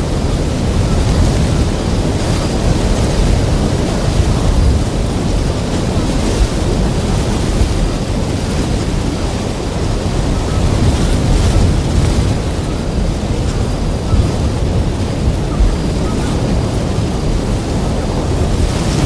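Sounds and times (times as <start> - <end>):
loud wind rushing: 0.0 - 19.0.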